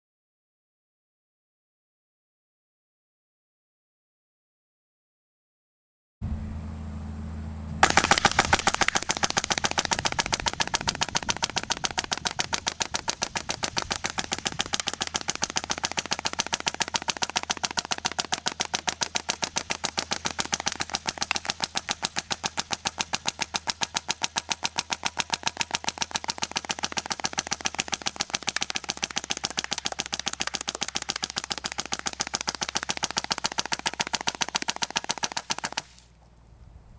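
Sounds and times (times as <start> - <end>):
low hum: 6.2 - 36.9
airsoft machine gun firing: 7.8 - 36.1.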